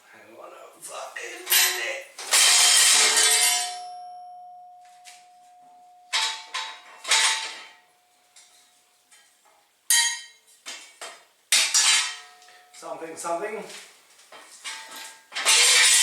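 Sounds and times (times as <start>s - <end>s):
metal parts clanking and ringing: 1.4s - 4.4s, 5.0s - 7.8s, 9.9s - 10.4s, 14.7s - 16.0s.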